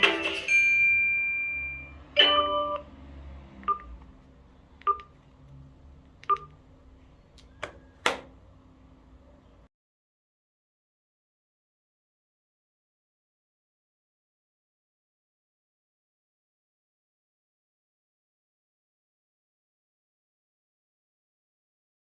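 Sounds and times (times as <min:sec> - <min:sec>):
phone ringtone melody: 0:00.0 - 0:02.9
held beep: 0:00.5 - 0:02.8, 0:03.7 - 0:03.9
chord of beeps: 0:00.5 - 0:02.9, 0:03.6 - 0:04.0, 0:04.8 - 0:05.1.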